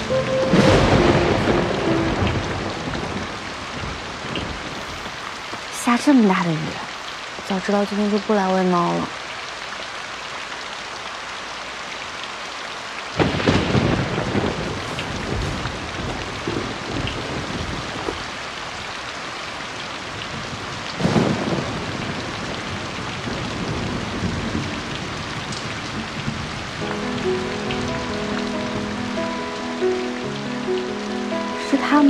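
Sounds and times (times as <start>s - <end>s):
thunder claps rumbling: 0.0s - 6.0s, 13.2s - 18.6s, 20.2s - 29.8s
heavy rain falling: 0.0s - 32.0s.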